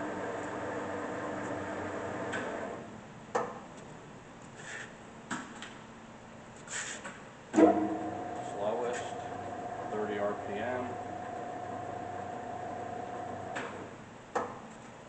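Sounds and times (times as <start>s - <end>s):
lathe humming: 7.6s - 13.9s.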